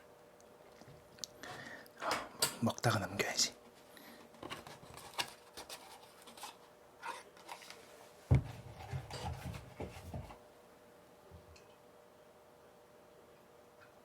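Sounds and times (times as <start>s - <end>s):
packaging clicks and rustles: 4.4s - 7.8s.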